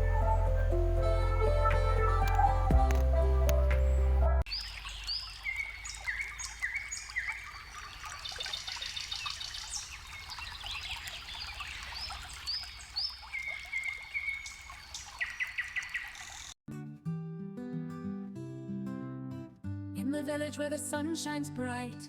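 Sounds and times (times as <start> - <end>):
songbirds singing: 3.1 - 16.6
flowing water: 4.4 - 16.6.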